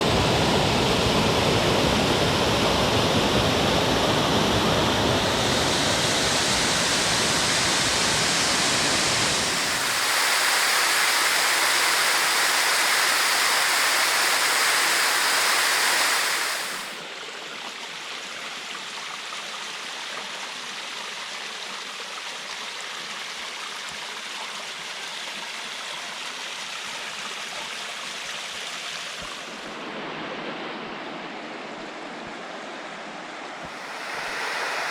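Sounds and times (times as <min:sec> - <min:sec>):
waterfall rushing: 0:03.7 - 0:17.0, 0:33.6 - 0:34.9.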